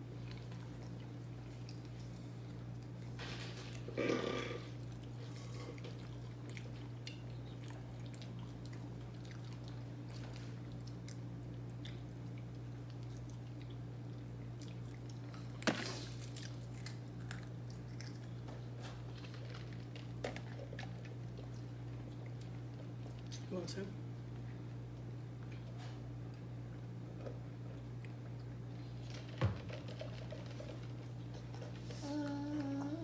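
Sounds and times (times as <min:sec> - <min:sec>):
steady low hum: 0:00.0 - 0:33.0
person chewing food: 0:03.8 - 0:23.3.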